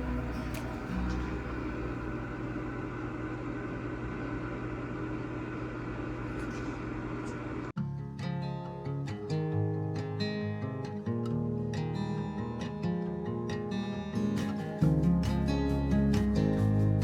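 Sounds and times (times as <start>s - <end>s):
acoustic guitar music: 0.0s - 2.9s, 7.8s - 17.0s
machine humming: 0.0s - 4.9s.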